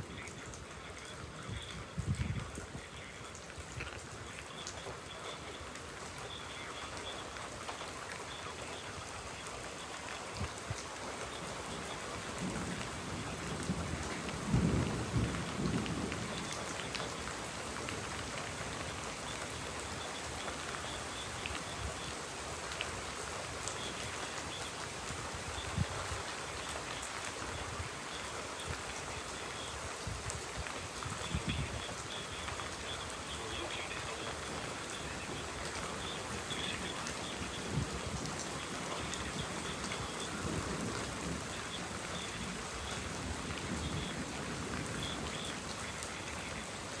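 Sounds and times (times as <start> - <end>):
steady rain falling: 0.0 - 47.0
low rumble of thunder: 11.5 - 18.9, 34.3 - 46.8.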